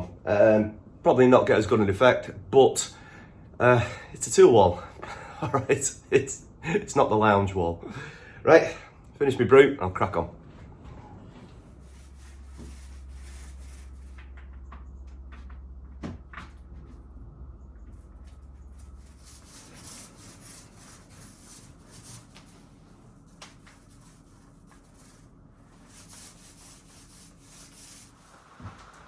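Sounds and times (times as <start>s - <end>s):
low steady hum: 0.0s - 29.0s
soft rubbing and handling: 10.4s - 15.5s, 17.8s - 29.0s.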